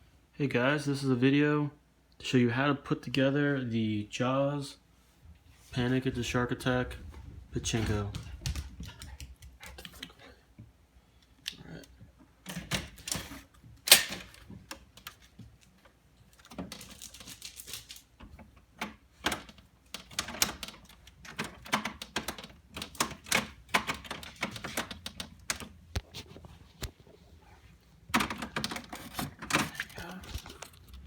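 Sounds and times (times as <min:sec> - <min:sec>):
hard parts clicking and rattling: 0:12.4 - 0:25.8, 0:28.1 - 0:31.0.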